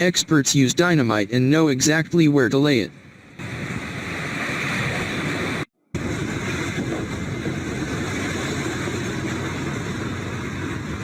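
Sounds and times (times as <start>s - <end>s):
steady mechanical noise: 2.9s - 11.0s.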